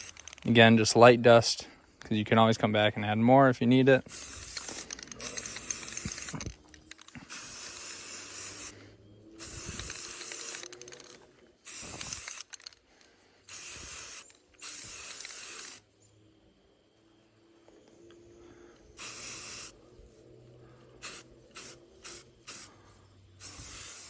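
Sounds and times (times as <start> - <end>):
spray paint can hissing: 0.0 - 0.2, 4.0 - 8.8, 9.4 - 12.6, 13.5 - 15.8, 19.0 - 19.8, 21.0 - 22.8, 23.4 - 24.0.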